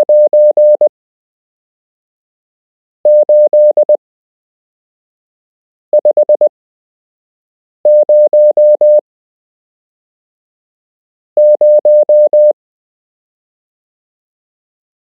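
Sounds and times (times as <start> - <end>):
morse code beeps: 0.0 - 0.9, 3.1 - 4.0, 7.9 - 9.0, 11.4 - 12.5.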